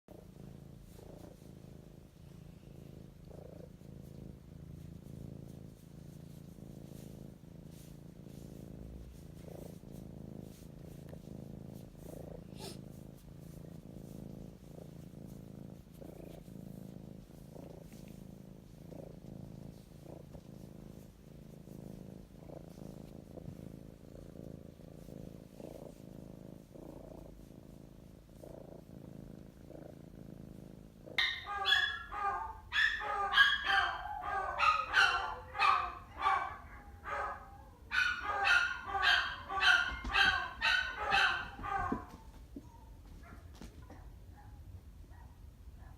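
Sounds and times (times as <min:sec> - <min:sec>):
cat purring: 0:00.0 - 0:45.9
animal yipping and crying: 0:31.2 - 0:42.2.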